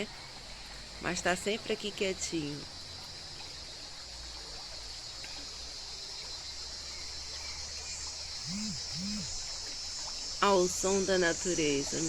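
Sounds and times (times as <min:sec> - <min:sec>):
cicadas droning: 0:00.0 - 0:12.0
short low rising and falling notes: 0:08.4 - 0:09.4.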